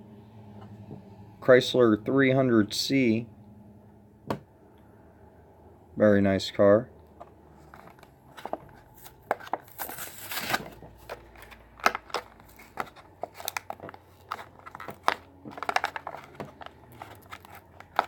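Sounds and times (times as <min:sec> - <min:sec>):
plastic packaging crinkling: 0:07.6 - 0:18.0
packaging tearing rip: 0:09.7 - 0:10.8.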